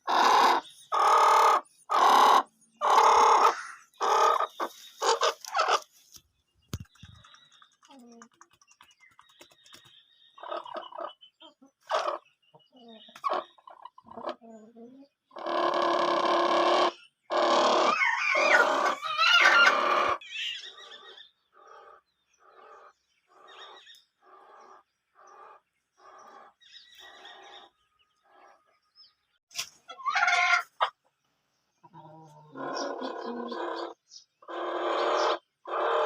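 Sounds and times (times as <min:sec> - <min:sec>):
chickens squawking: 0:00.0 - 0:06.0, 0:10.4 - 0:28.6, 0:29.5 - 0:31.1, 0:31.8 - 0:36.0
chickens clucking: 0:00.0 - 0:20.2, 0:29.5 - 0:31.2.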